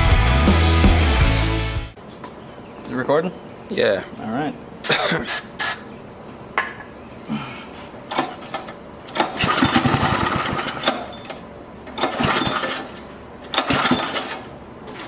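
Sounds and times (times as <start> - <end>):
engine firing in short bursts: 9.1 - 11.2, 11.9 - 14.5.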